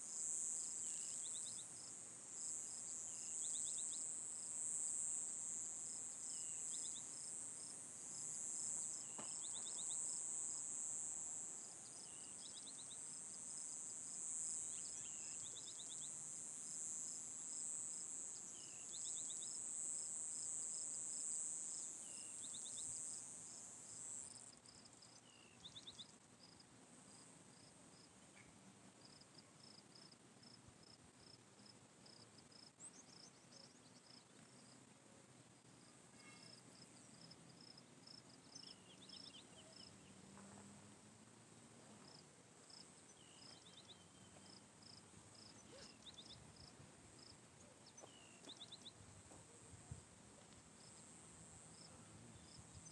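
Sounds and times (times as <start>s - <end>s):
high-pitched insect chorus: 0.1s - 26.0s.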